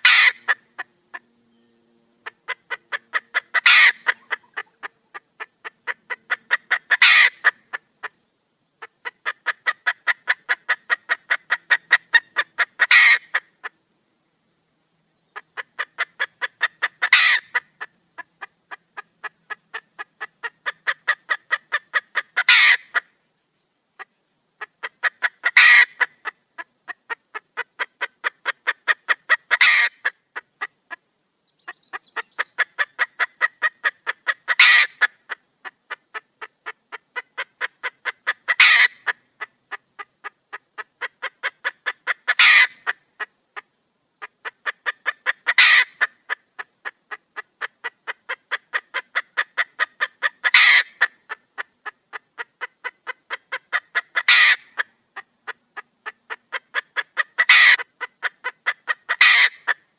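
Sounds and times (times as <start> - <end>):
hen squawking: 0.0 - 1.2, 2.2 - 7.8, 9.0 - 13.4, 15.6 - 17.6, 22.2 - 23.0, 29.5 - 30.1, 31.9 - 35.1, 38.0 - 39.2, 41.0 - 43.0, 44.6 - 46.3, 48.5 - 51.1, 53.7 - 54.8, 56.5 - 58.1, 58.7 - 59.8
hen clucking: 0.0 - 1.3, 2.2 - 8.2, 8.8 - 13.8, 15.3 - 23.2, 24.0 - 31.0, 31.6 - 59.9.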